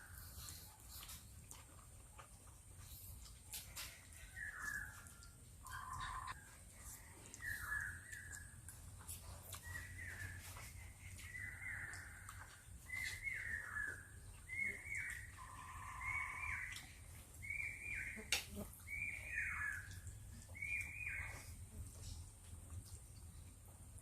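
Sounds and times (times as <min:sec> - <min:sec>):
bird calling: 0:05.6 - 0:06.4.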